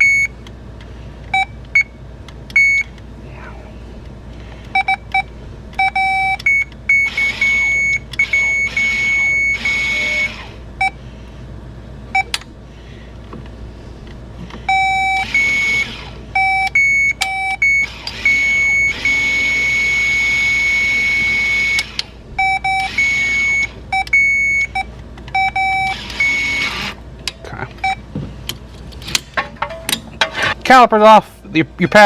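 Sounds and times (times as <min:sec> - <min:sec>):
power probe beeping: 0:00.0 - 0:00.3, 0:01.4 - 0:03.0, 0:04.7 - 0:11.0, 0:14.6 - 0:27.0
small motor whirring: 0:07.0 - 0:10.6, 0:14.8 - 0:16.2, 0:17.7 - 0:23.8, 0:25.8 - 0:27.0.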